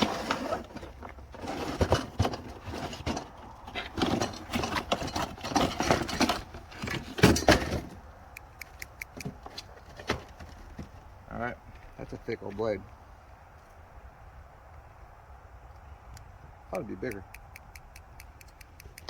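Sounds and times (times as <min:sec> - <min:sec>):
heavy metal clank: 0:01.4 - 0:08.0
light ticks: 0:17.1 - 0:19.0.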